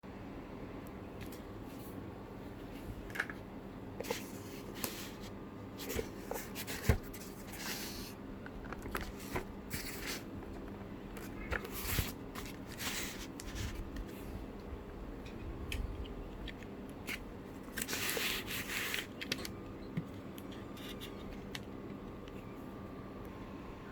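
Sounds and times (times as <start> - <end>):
faint steady hum: 0.0 - 23.9
packaging rustling and scraping: 4.0 - 14.3, 17.0 - 19.6.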